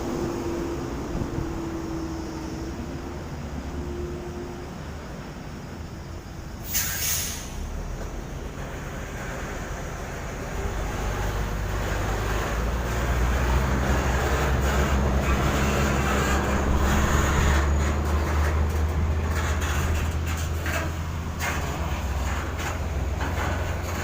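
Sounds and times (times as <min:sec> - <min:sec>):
outdoor noise: 0:00.0 - 0:24.0
vehicle engine running: 0:08.2 - 0:24.0.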